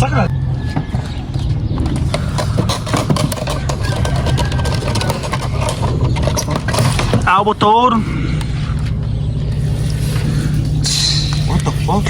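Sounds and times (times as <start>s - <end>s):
engine humming: 0.0s - 12.0s
parts knocking and rattling: 0.7s - 8.0s, 9.5s - 12.0s.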